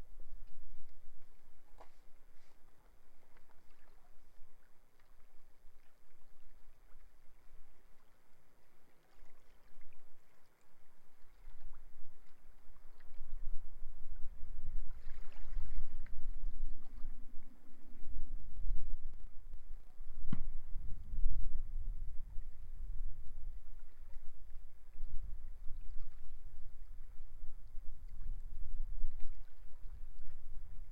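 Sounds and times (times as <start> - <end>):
wind buffeting microphone: 12.9 - 30.9.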